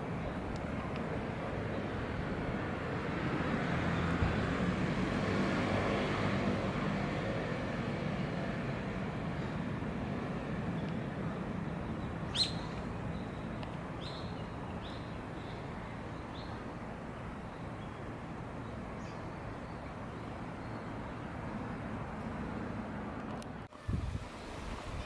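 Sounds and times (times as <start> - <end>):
steady outdoor hum: 0.0 - 25.0
small bird chirping: 11.8 - 16.6.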